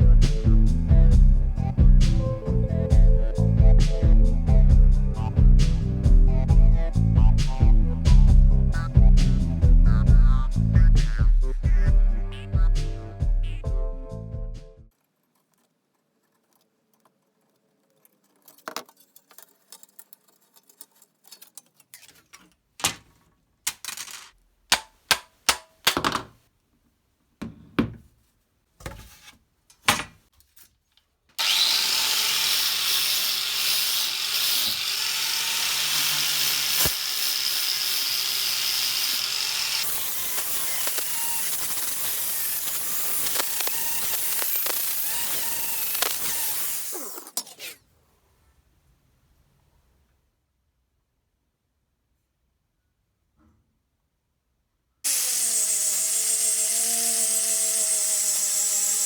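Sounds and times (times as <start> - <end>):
tools clicking and scraping: 15.0 - 26.2, 39.8 - 47.8
power tool running: 31.4 - 47.4, 55.1 - 59.0.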